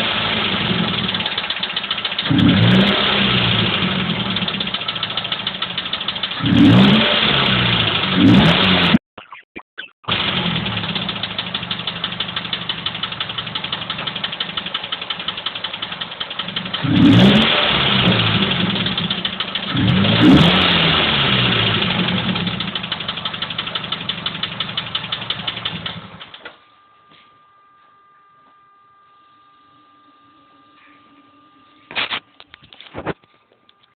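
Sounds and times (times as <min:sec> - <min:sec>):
car engine idling: 0:00.0 - 0:08.9, 0:10.1 - 0:26.9
engine revving: 0:00.0 - 0:09.0, 0:10.1 - 0:14.6, 0:15.2 - 0:26.2.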